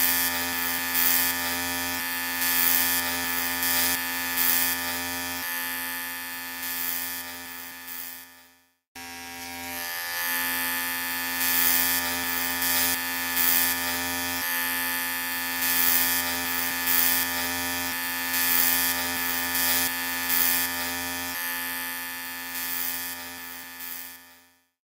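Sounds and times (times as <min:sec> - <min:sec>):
electric hair trimmer buzzing: 0:00.0 - 0:24.8.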